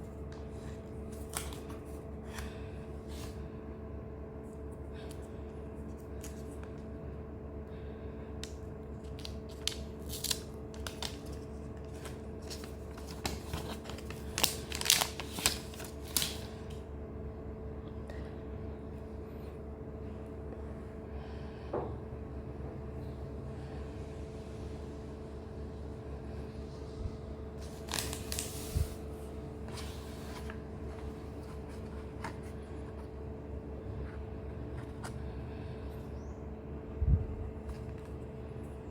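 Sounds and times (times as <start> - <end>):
low electrical hum: 0.0 - 38.9
rustling handling noises: 9.0 - 16.6, 27.6 - 35.2.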